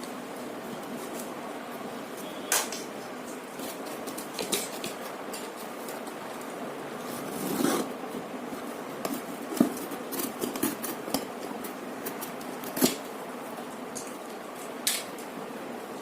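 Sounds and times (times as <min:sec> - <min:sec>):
cardboard and tape scraping: 0:07.0 - 0:08.0.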